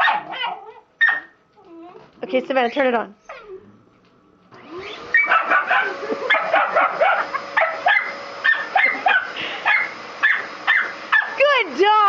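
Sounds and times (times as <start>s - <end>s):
dog barking: 0.0s - 1.4s, 5.1s - 11.4s
vacuum cleaner motor hiss: 6.9s - 12.0s.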